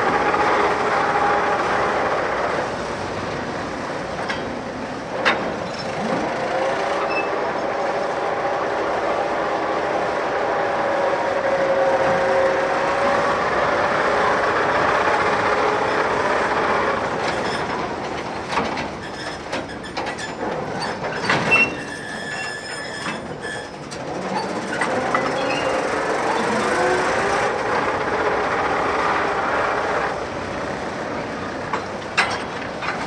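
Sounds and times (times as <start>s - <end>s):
steel wheels squealing: 5.6s - 14.1s, 14.8s - 30.2s
metallic clanks and knocks: 31.8s - 33.0s.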